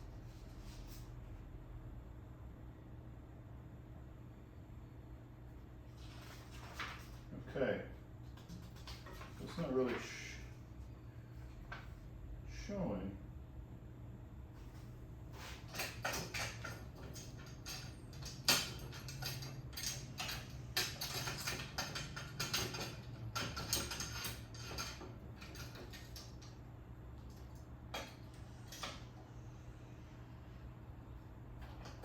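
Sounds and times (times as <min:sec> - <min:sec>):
metal parts clicking and rattling: 0:15.6 - 0:26.6.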